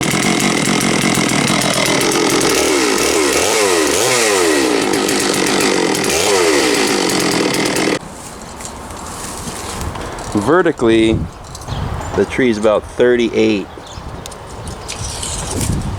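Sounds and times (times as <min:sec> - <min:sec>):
chainsaw running fast: 0:00.0 - 0:08.0.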